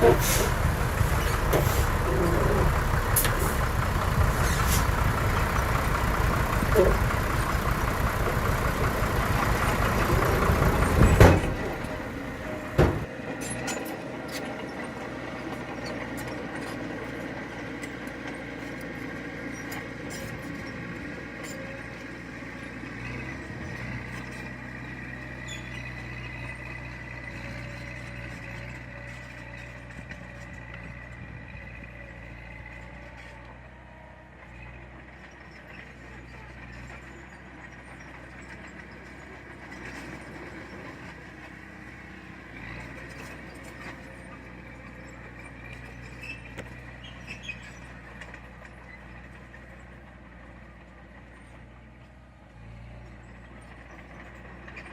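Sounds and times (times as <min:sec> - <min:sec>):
diesel engine hum: 0:00.0 - 0:54.9.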